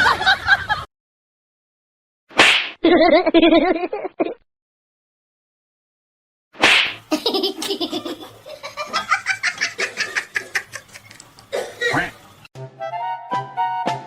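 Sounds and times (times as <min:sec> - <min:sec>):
person laughing hard: 0:07.1 - 0:11.2.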